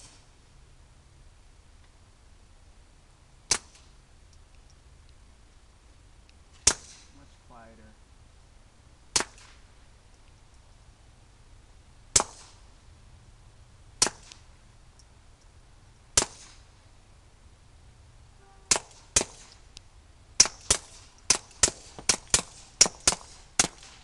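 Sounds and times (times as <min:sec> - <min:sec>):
suppressed pistol shots: 0:12.1 - 0:12.6, 0:14.0 - 0:14.5, 0:16.2 - 0:16.6, 0:18.7 - 0:19.6, 0:20.4 - 0:24.0.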